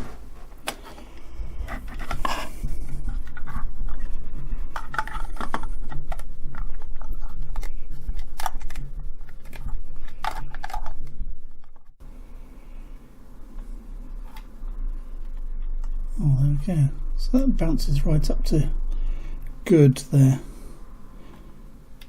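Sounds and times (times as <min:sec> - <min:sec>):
plastic clicks and scrapes: 0:00.0 - 0:03.6, 0:04.7 - 0:11.8
steady low hum: 0:00.0 - 0:22.0.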